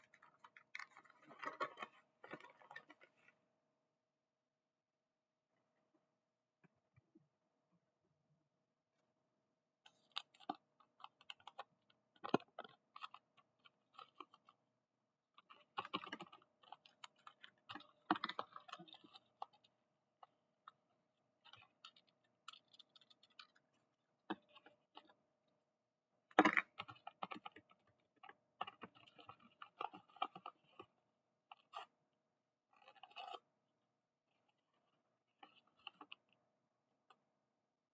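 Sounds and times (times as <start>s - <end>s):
packaging crackling and rustling: 0.0s - 3.2s.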